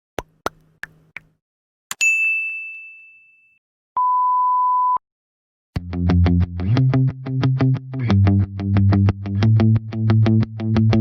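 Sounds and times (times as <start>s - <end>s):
music: 5.8s - 11.0s.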